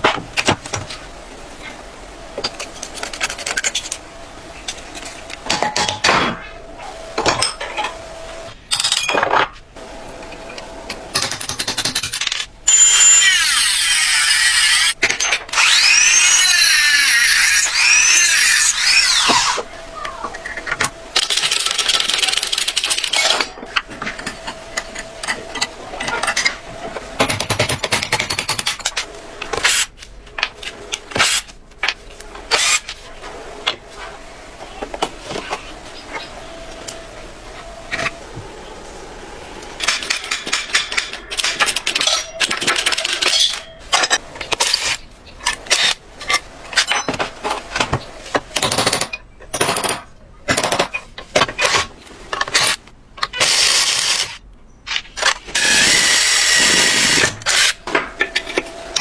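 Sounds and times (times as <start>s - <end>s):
clanks on metal parts: 4.7s - 6.6s, 7.2s - 9.6s, 10.2s - 33.8s, 39.8s - 54.3s, 54.9s - 59.0s
power tool running: 12.7s - 26.7s, 55.6s - 57.8s.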